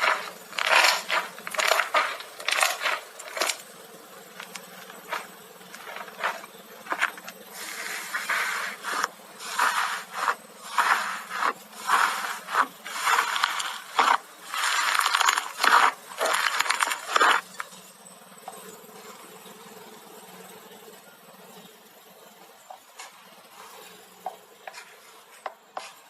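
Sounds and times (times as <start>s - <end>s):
slime squelching: 0.0s - 3.6s, 4.4s - 17.6s.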